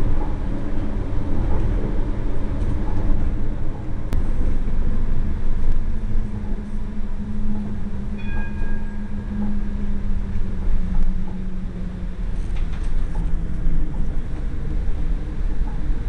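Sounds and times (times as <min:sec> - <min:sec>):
tram rumbling: 0:00.0 - 0:16.0.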